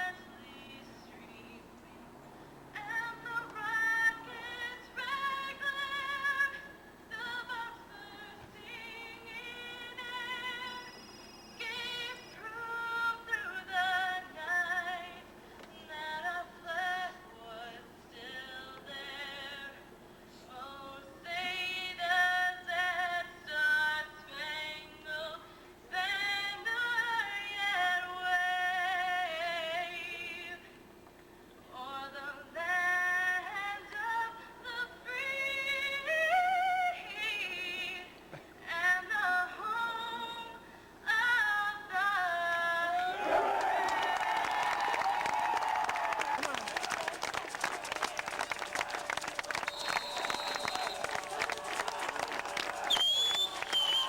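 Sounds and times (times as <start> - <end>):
woman singing with vibrato: 0.0 - 1.8, 2.8 - 11.0, 11.6 - 19.8, 20.5 - 30.6, 31.7 - 43.2
faint steady hum: 0.0 - 54.0.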